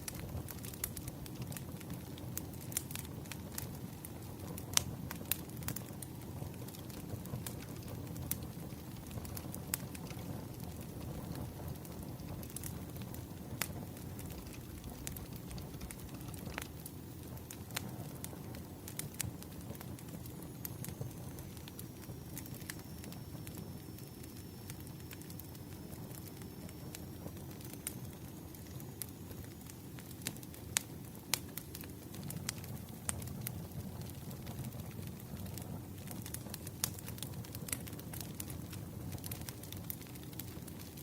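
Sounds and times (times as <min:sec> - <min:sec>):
wood fire crackling: 0:00.0 - 0:41.0
steady low rumble: 0:10.6 - 0:23.3.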